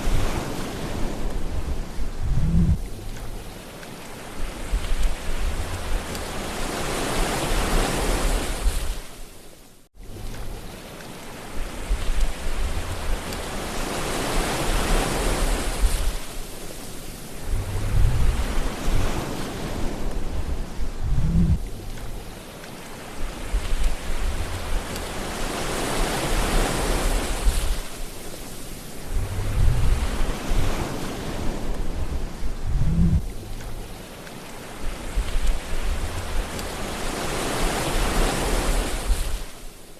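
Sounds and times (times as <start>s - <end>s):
sea waves breaking: 0.0s - 39.9s
deep wave rumbles: 1.4s - 3.4s, 17.4s - 22.4s, 23.4s - 25.0s, 29.0s - 33.9s.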